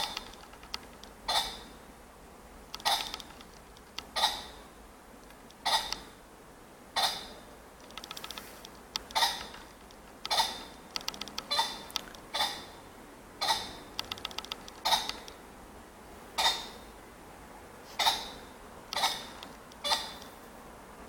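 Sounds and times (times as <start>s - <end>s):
pheasant calling: 1.3s - 1.8s, 2.8s - 3.3s, 4.1s - 4.6s, 5.6s - 6.1s, 7.0s - 7.4s, 9.1s - 9.7s, 10.3s - 10.8s, 11.4s - 12.8s, 13.4s - 14.0s, 14.7s - 15.4s, 16.4s - 16.9s, 18.0s - 20.4s.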